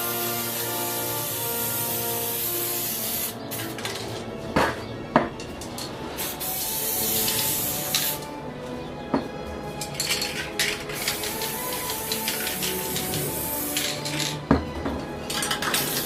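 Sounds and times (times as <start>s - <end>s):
spray paint can hissing: 0.0s - 4.0s, 6.2s - 8.3s, 10.0s - 14.4s, 15.3s - 16.0s
background music: 0.0s - 16.0s.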